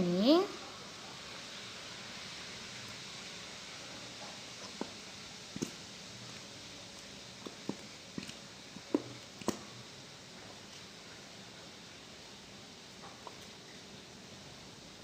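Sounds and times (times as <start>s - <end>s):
faint steady hiss: 0.0s - 15.0s
small objects clicking and tapping: 4.2s - 9.8s.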